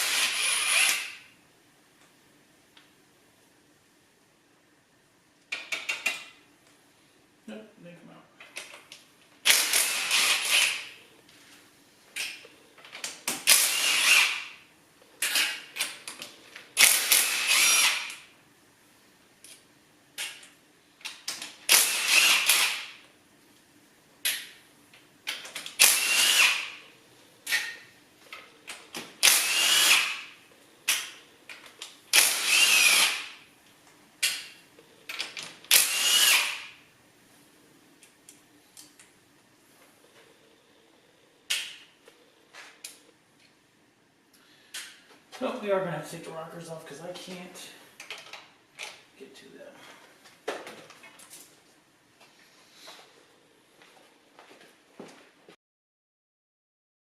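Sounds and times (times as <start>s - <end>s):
power drill whining: 0.0s - 1.3s, 9.4s - 11.0s, 13.5s - 14.6s, 16.8s - 18.2s, 21.7s - 22.9s, 25.8s - 26.8s, 29.2s - 30.4s, 32.1s - 33.4s, 35.7s - 36.8s.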